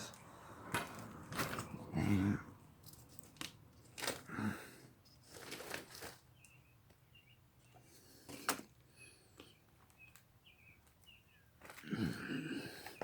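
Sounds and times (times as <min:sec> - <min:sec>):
rustling and handling noises: 0:00.1 - 0:02.0, 0:02.8 - 0:04.4, 0:05.0 - 0:07.0, 0:07.6 - 0:11.9
birds chirping: 0:05.9 - 0:13.0.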